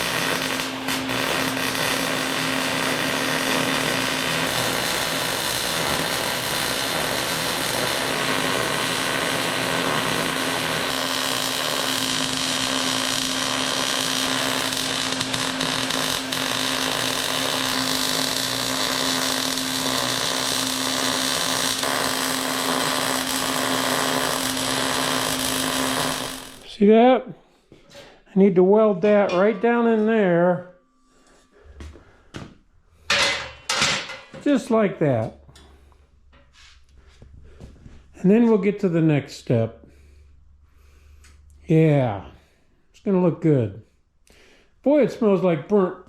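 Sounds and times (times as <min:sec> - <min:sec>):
angle grinder on metal: 0:00.0 - 0:26.7.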